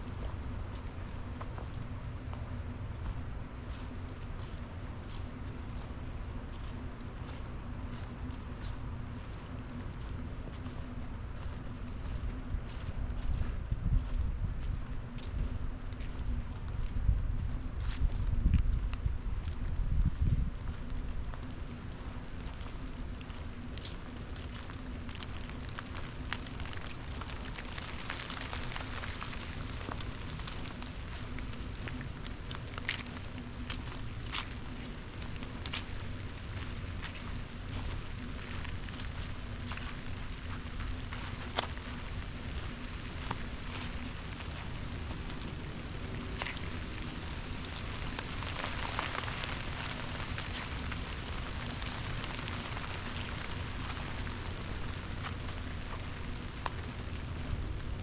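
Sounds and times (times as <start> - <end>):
light rain on leaves: 0.0 - 19.8, 20.6 - 58.0
raindrops ticking: 20.8 - 58.0
single raindrops ticking: 23.2 - 37.3.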